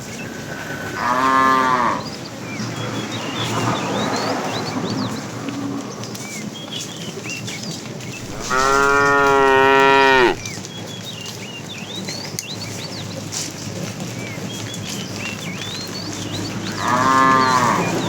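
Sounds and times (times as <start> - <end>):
cow mooing: 0.8 - 2.1, 8.2 - 10.4, 16.7 - 18.0.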